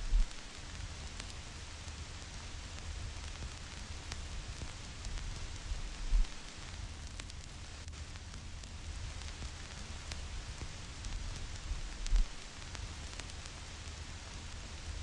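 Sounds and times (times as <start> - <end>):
low rumble: 0.0 - 0.4
vinyl record hiss and crackles: 0.0 - 15.0.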